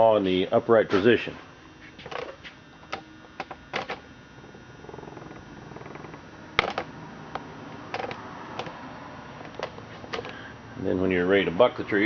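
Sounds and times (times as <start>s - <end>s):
chainsaw handling clicks and knocks: 7.7s - 8.8s, 9.4s - 10.4s.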